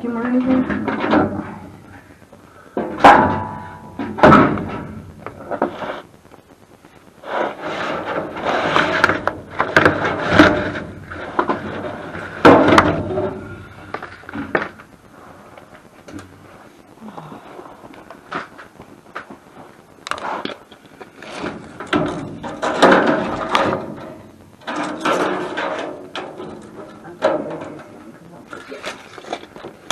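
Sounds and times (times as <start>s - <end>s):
objects knocking and clattering: 0.2s - 6.4s, 7.7s - 14.9s, 20.0s - 29.9s.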